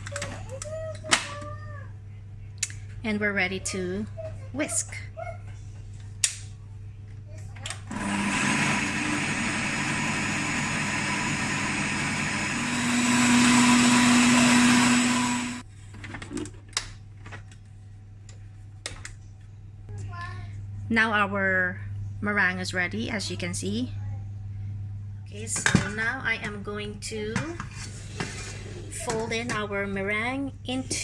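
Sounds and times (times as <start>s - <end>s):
stand mixer whisking: 8.0s - 15.6s.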